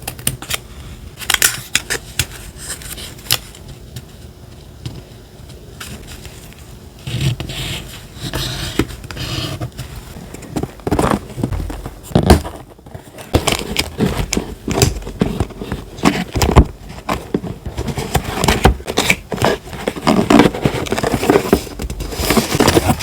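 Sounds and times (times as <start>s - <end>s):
paper crinkling and rustling: 8.3s - 23.0s.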